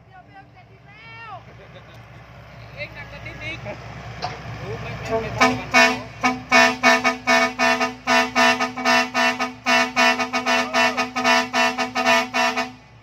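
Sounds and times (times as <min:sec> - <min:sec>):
steady low horn tone: 0:05.0 - 0:13.0
rhythmic vehicle air horn blasts: 0:05.1 - 0:13.0.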